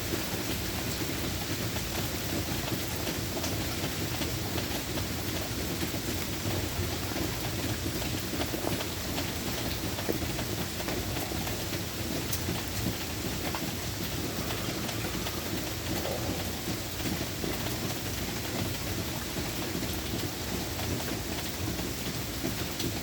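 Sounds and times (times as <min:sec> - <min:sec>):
rain drops ticking: 0:00.0 - 0:23.0
rain hiss: 0:00.0 - 0:23.0.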